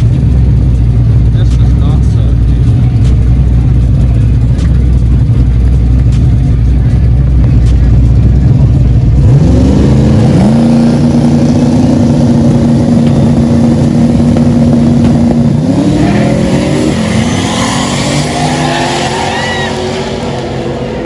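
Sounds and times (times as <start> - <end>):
car engine revving hard: 8.4 - 21.0.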